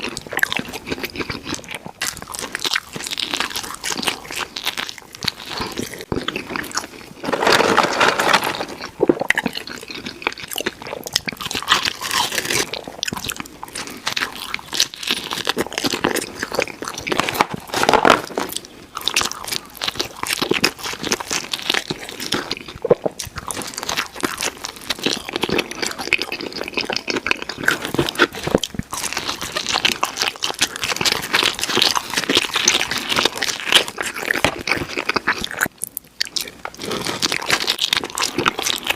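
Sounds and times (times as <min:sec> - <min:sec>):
person chewing pizza: 0:00.0 - 0:38.9
crackly mouth clicks: 0:08.8 - 0:38.9.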